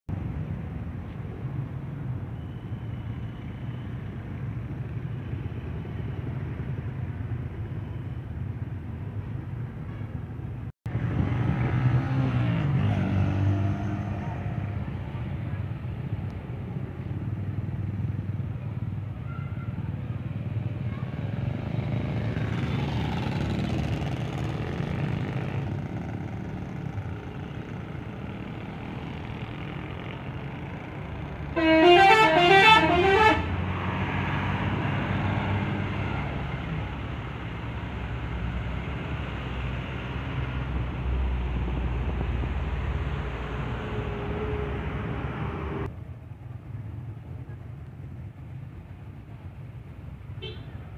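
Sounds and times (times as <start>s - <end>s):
bus engines and traffic rumble: 0.1s - 50.9s
musical bus horn: 31.5s - 33.6s.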